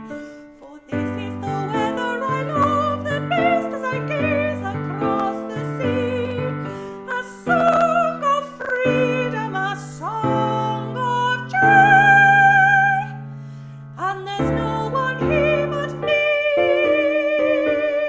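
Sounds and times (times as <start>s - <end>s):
piano accompaniment: 0.0s - 18.0s.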